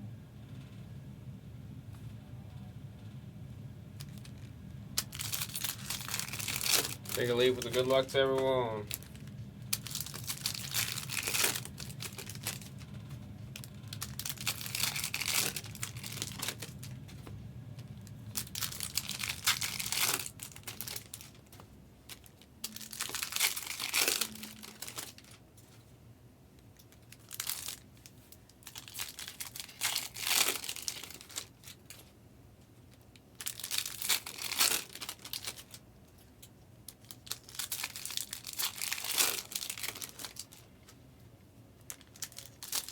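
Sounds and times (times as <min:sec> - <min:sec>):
foil wrappers tearing and crinkling: 0:04.0 - 0:12.9, 0:13.5 - 0:17.0, 0:18.0 - 0:25.4, 0:26.8 - 0:32.1, 0:32.9 - 0:35.8, 0:36.9 - 0:40.7, 0:41.8 - 0:42.9.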